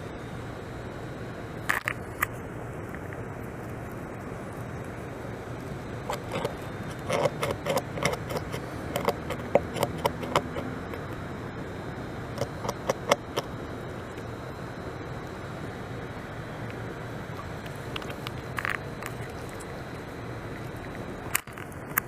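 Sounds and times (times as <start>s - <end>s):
steady low hiss: 0.0s - 22.0s
beaver gnawing bark: 6.0s - 11.2s, 12.3s - 14.3s, 16.6s - 22.0s.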